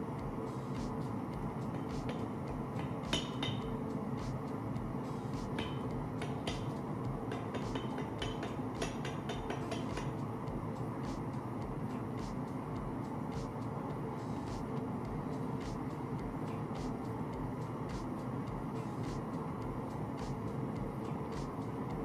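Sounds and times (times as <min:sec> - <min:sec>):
metal clinks on anvil: 0:05.6 - 0:10.2.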